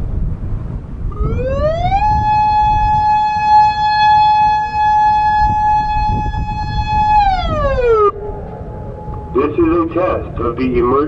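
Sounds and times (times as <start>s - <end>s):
wind rumble on microphone: 0.0s - 11.0s
outdoor warning siren: 1.1s - 11.0s
recorded announcements: 8.0s - 11.0s.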